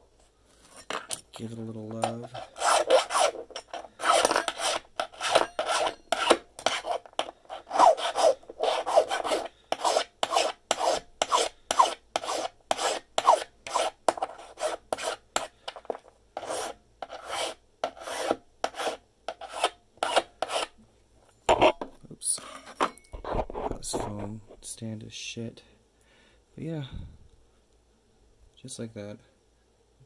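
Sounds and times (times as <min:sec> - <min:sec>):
hand file rasping on brass: 0:01.9 - 0:15.8, 0:16.4 - 0:20.8
file squeal: 0:02.3 - 0:13.9.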